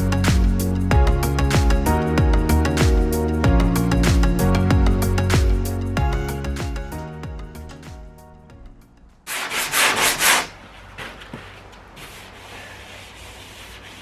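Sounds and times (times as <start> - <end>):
sanding body filler: 9.3 - 10.6, 12.0 - 14.0.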